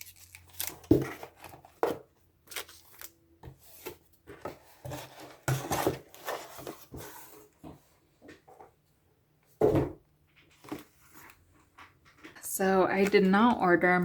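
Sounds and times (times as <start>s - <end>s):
cardboard rustling and scraping: 0.0s - 8.6s, 10.5s - 12.2s.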